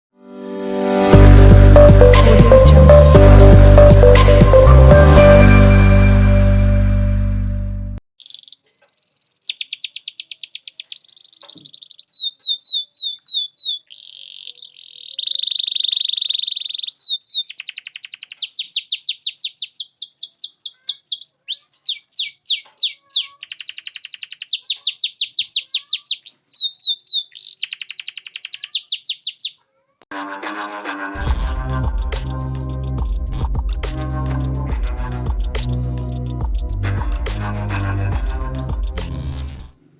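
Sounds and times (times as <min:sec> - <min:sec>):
canary singing trills: 0:08.2 - 0:30.0, 0:31.7 - 0:37.2.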